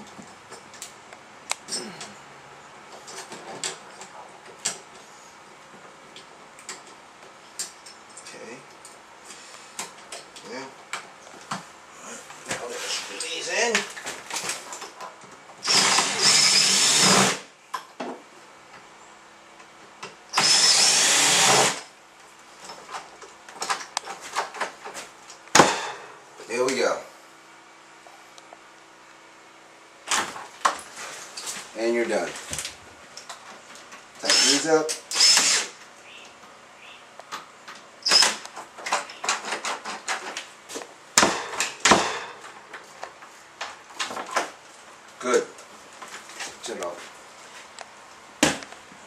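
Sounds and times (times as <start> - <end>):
cordless drill running: 15.6 - 17.4, 20.3 - 21.8, 34.2 - 35.7.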